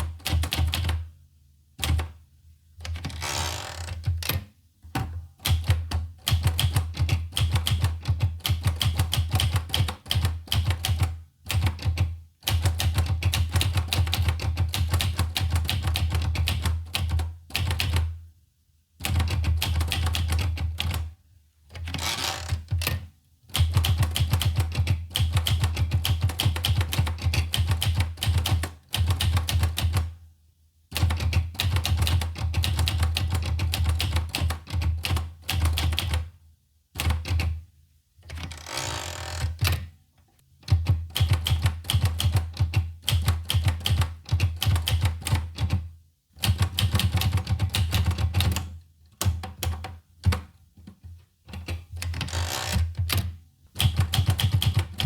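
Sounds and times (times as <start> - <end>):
manual typewriter typing: 0.0 - 1.0, 5.4 - 18.1, 19.0 - 21.1, 21.7 - 30.1, 31.0 - 36.3, 40.7 - 45.8, 46.4 - 50.4, 51.5 - 55.0.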